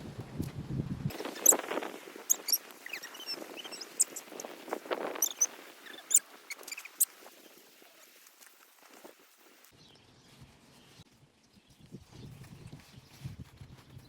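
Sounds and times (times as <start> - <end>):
small animals chirping and squeaking: 1.1 - 8.2.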